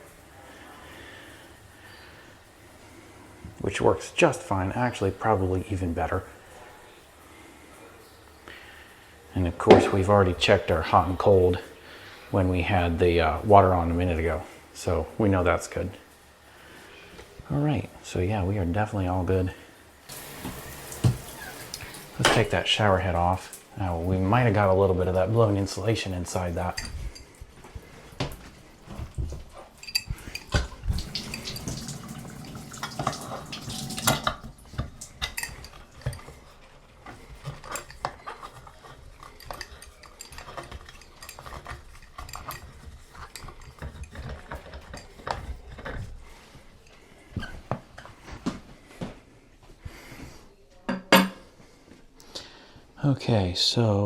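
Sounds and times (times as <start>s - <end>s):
metallic clinks and scrapes: 26.3s - 27.4s, 28.9s - 46.4s.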